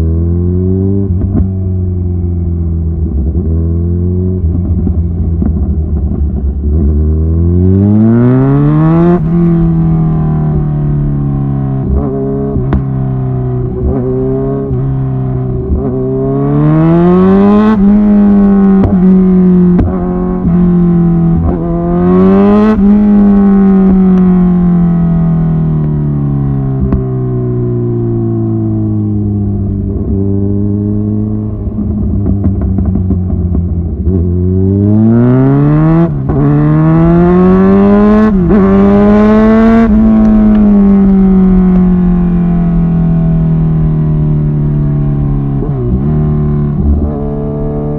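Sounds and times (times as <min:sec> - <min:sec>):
motorcycle engine revving: 0:00.0 - 0:47.9
exhaust pops and cracks: 0:31.9 - 0:34.2.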